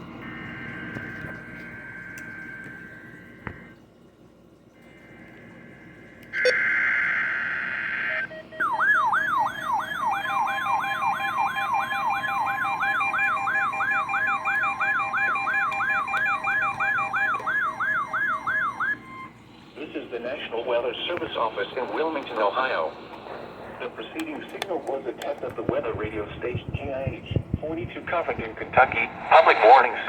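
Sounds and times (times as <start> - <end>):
steady warning alarm tone: 0.0 - 3.8, 4.8 - 19.5
warbling alarm siren: 0.0 - 3.8, 4.8 - 19.5
screeching digital data burst: 6.4 - 8.3.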